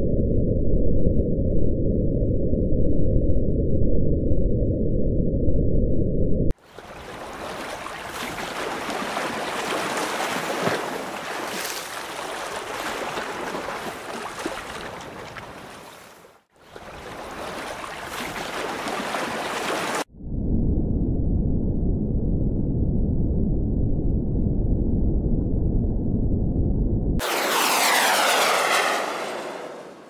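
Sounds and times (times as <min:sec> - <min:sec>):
rushing splashing water: 0:06.6 - 0:20.1.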